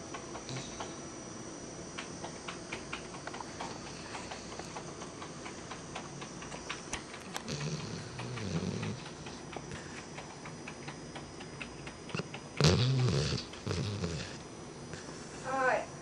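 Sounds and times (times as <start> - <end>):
dog snoring: 0.4 - 1.0, 3.4 - 6.1, 6.7 - 10.2, 12.1 - 15.6.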